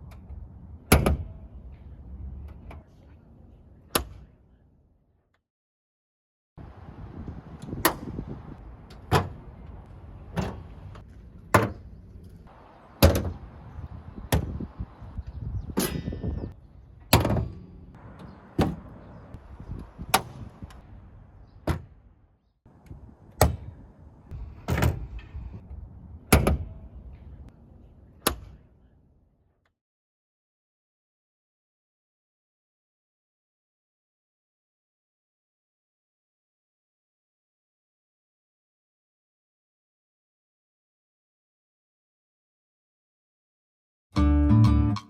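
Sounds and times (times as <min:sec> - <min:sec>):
car bonnets slamming shut: 0:00.9 - 0:01.4, 0:08.9 - 0:11.8, 0:12.8 - 0:14.6, 0:17.1 - 0:19.3, 0:21.6 - 0:22.0, 0:23.3 - 0:23.8, 0:24.4 - 0:25.4, 0:26.3 - 0:26.8.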